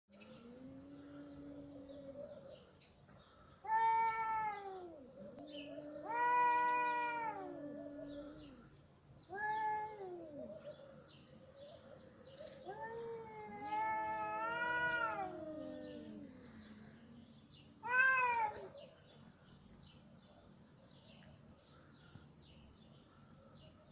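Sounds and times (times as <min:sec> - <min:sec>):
cats yowling: 0:00.2 - 0:02.7, 0:03.6 - 0:08.7, 0:09.3 - 0:10.8, 0:12.5 - 0:16.5, 0:17.8 - 0:19.0.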